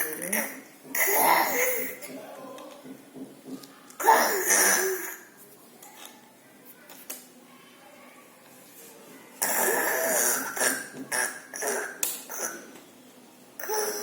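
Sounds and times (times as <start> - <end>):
child's cough-like vocal bursts: 0.4 - 2.0, 4.0 - 5.3, 9.4 - 12.7, 13.6 - 14.0.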